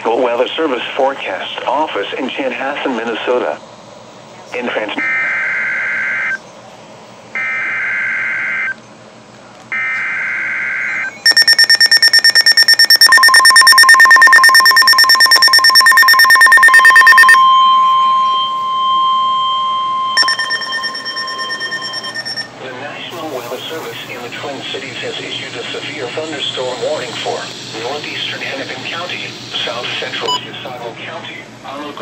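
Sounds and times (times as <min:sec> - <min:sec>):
steady warning alarm tone: 0:07.4 - 0:08.8, 0:09.8 - 0:30.4
rapid alarm beeps: 0:10.8 - 0:22.6, 0:23.6 - 0:30.4
buzzy two-tone data screech: 0:11.3 - 0:22.5.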